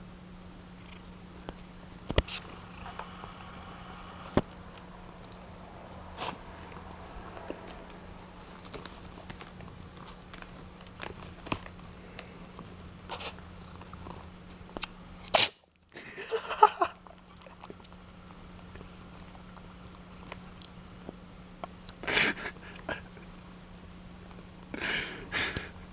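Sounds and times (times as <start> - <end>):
cat snuffling: 0.8 - 10.6, 11.9 - 14.3
cat sneezing: 13.1 - 13.4, 15.3 - 15.6.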